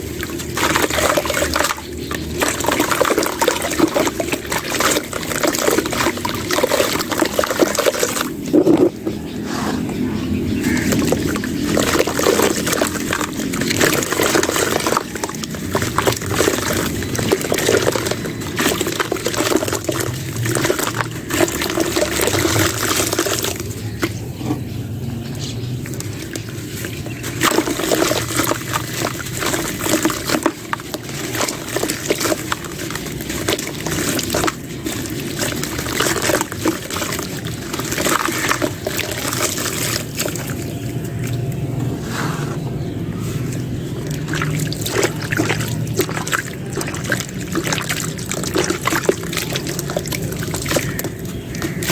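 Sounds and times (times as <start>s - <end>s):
water pouring and trickling: 0.0s - 51.9s.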